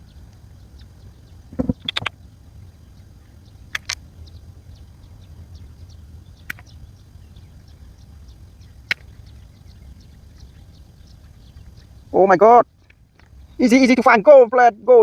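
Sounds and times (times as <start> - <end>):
low steady rumble: 0.0 - 15.0
cable snapping clicks: 3.7 - 4.0.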